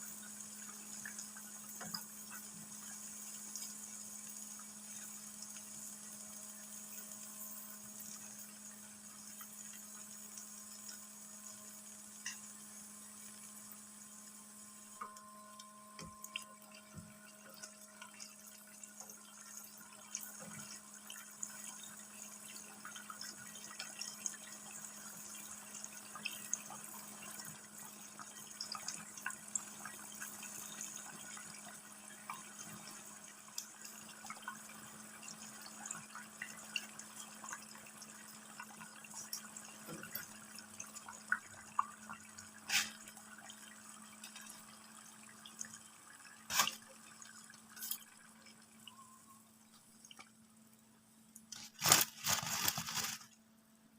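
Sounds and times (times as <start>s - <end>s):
dough sizzling in hot oil: 0.0s - 53.9s
oil popping and crackling: 38.6s - 48.6s, 51.3s - 53.4s.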